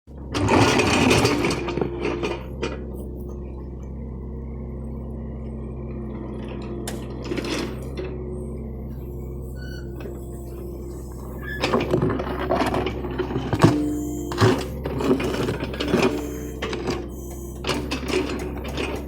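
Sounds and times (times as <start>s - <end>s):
diesel engine running: 0.1s - 19.0s
metal clanking and scraping: 8.9s - 19.0s.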